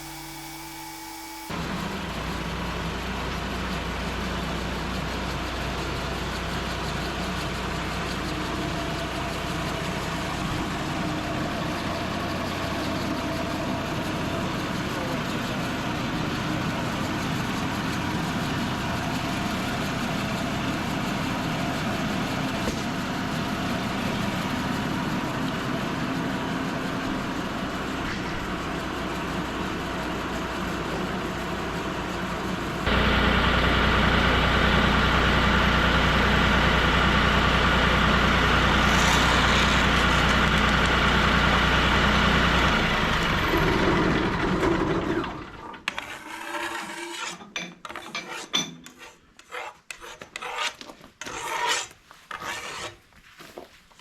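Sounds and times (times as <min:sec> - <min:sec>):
sawmill engine running: 0:00.0 - 0:45.8
band blade sawing through log: 0:45.9 - 0:53.0.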